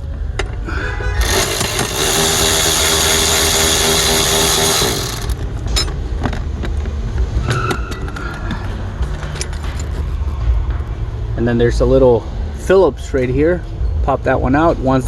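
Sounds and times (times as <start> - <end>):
cordless power driver spinning: 1.2 - 5.5.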